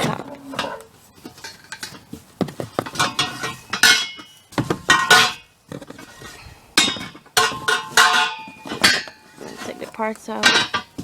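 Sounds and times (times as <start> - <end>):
metal swing parts clanking: 0.0 - 11.0.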